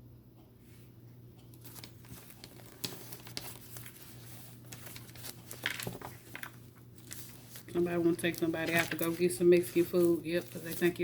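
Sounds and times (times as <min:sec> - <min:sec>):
cards being shuffled: 0:01.5 - 0:11.0.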